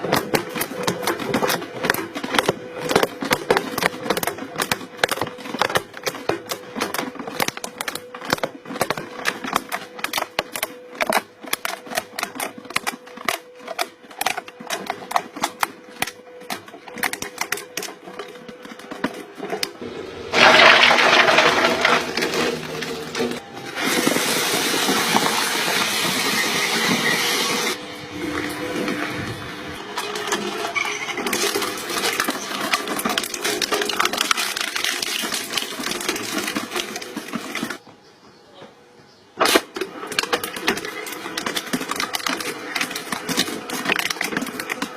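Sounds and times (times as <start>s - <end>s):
machine hum: 0.0s - 39.0s
loud rushing grinding noise: 19.8s - 37.8s.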